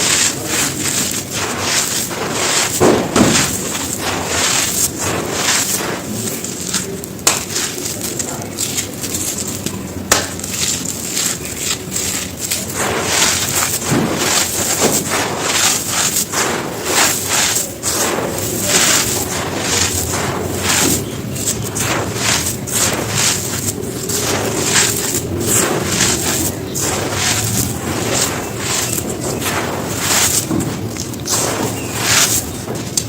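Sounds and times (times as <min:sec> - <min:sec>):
chunks crunching and crumbling: 0:00.0 - 0:33.0
sharp snaps: 0:06.4 - 0:13.6.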